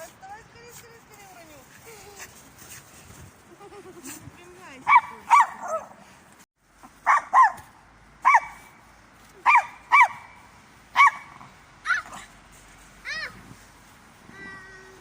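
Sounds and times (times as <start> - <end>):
dog barking high-pitched: 4.9 - 5.9, 7.0 - 7.6, 8.2 - 8.7, 9.4 - 10.4, 11.0 - 12.2.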